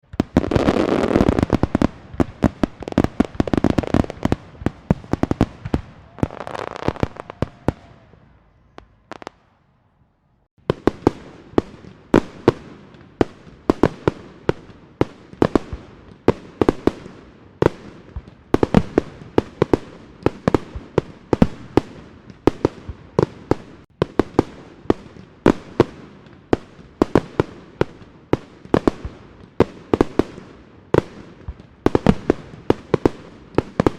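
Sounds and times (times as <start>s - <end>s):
fireworks bangs and crackle: 0.0s - 9.5s, 10.6s - 33.9s
sharp firework bursts: 0.1s - 8.1s.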